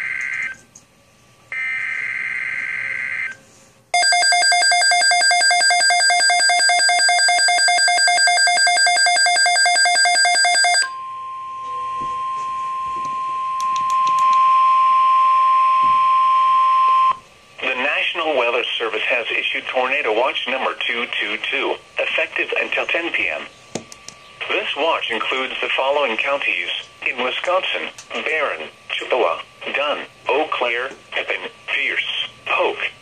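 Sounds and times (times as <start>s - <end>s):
steady warning alarm tone: 0.0s - 0.6s, 1.5s - 3.4s, 4.0s - 17.2s.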